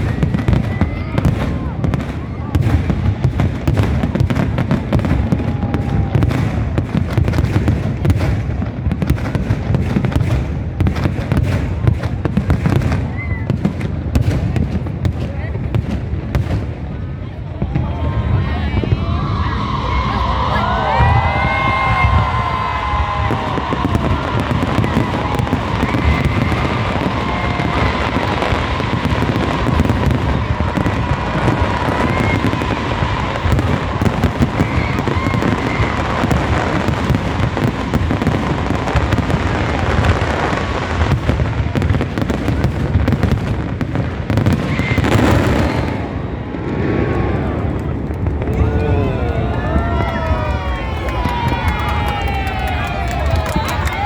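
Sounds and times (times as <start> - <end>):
whistling rockets: 0.0 - 17.0, 17.6 - 54.0
fireworks crackling and banging: 0.0 - 54.0.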